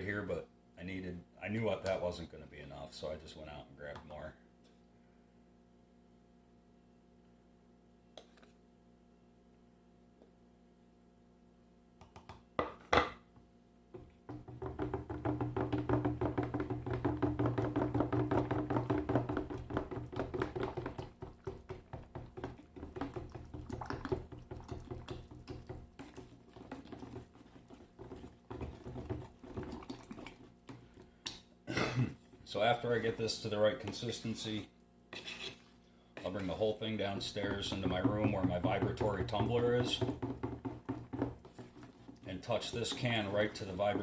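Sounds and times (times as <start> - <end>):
spoon knocking can: 14.3 - 27.4, 37.2 - 41.6
spoon scraping plaster: 19.4 - 31.1, 32.9 - 44.0.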